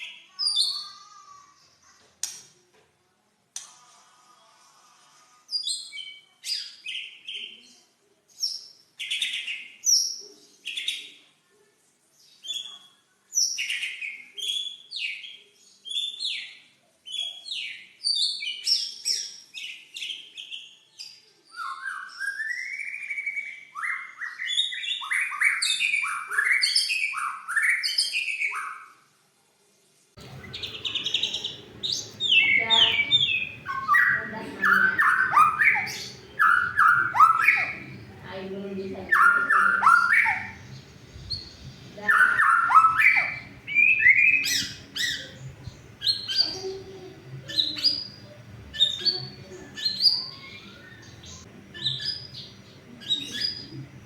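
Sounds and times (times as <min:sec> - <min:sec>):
bird singing whistled phrases: 0:21.5 - 0:28.7, 0:30.2 - 0:38.1, 0:39.1 - 0:40.7, 0:41.3 - 0:46.6.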